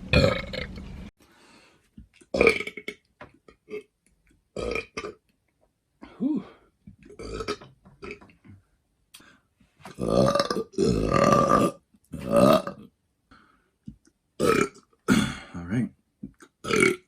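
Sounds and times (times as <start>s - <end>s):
man burping loudly: 0.1s - 0.8s, 2.3s - 3.9s, 4.6s - 5.2s, 6.1s - 8.2s, 9.9s - 12.9s, 14.4s - 15.6s, 16.2s - 17.0s.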